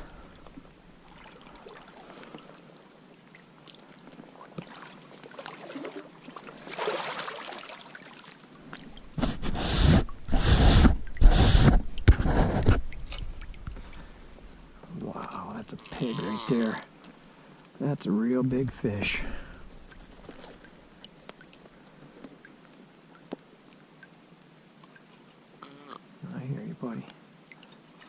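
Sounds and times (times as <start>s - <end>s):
faint creek hiss: 0.0s - 28.0s
fish splashing in water: 4.4s - 8.4s.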